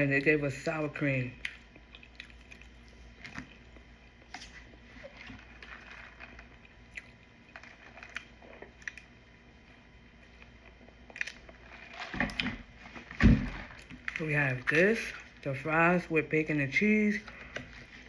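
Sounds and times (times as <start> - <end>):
chewing food: 1.3 - 14.3.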